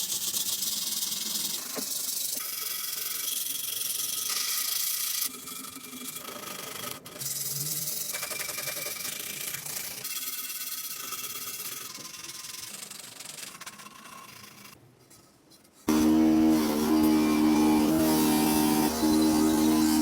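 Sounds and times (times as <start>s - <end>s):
abrasive rubbing on metal: 15.9s - 20.0s.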